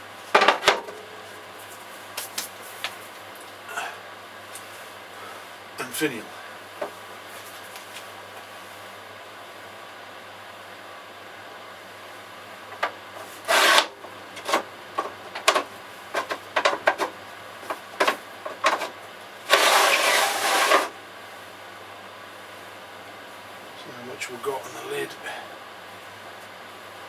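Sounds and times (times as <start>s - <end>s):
scraping on work surface: 13.2s - 21.0s.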